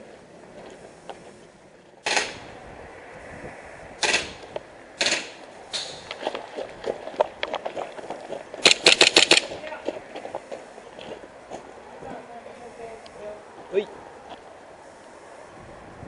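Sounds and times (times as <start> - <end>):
airsoft gun shots: 2.0 - 2.5, 4.0 - 4.4, 5.0 - 6.0, 8.6 - 9.6.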